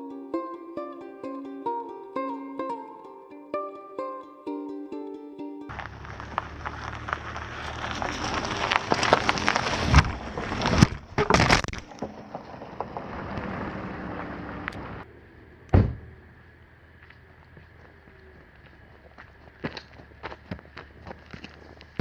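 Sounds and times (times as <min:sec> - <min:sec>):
van engine running: 0:05.7 - 0:11.2, 0:12.1 - 0:21.4
crackling crunching noise: 0:05.7 - 0:15.1, 0:16.2 - 0:22.0
sharp thump: 0:15.7 - 0:16.2
loud knocks: 0:15.8 - 0:16.1.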